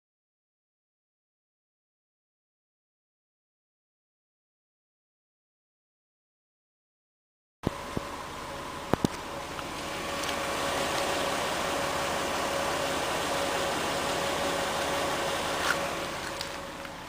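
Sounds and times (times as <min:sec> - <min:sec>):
constant whine: 0:07.6 - 0:17.0
engine idling: 0:07.7 - 0:17.0.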